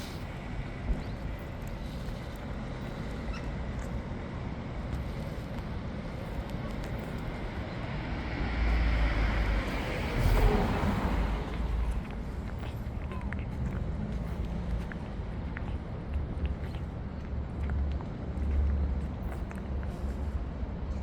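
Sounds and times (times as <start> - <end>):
vehicle passing with low rumble: 0.0 - 21.0.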